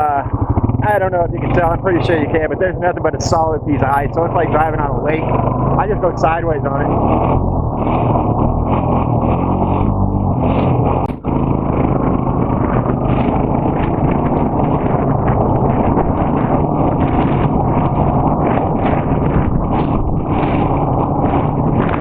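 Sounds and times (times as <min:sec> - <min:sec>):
atv engine running: 0:00.0 - 0:22.0
steady rushing noise: 0:00.0 - 0:22.0.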